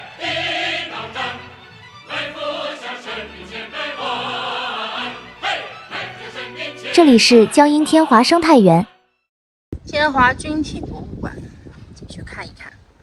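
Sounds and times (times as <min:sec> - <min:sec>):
choir singing held notes: 0:00.0 - 0:08.6.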